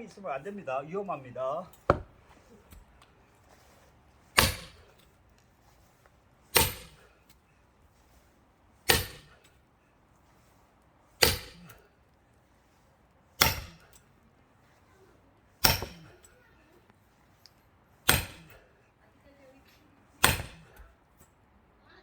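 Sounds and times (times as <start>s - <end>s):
sledgehammer striking axes: 1.6s - 5.8s, 6.5s - 7.3s, 8.8s - 9.6s, 11.2s - 11.9s, 13.4s - 14.0s, 15.6s - 16.4s, 18.0s - 18.8s, 20.2s - 21.0s.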